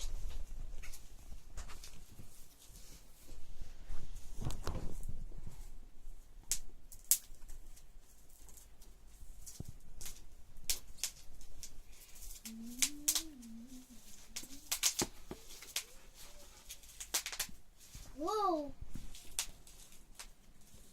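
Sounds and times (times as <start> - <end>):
low wavering voice hum: 12.4 - 14.8.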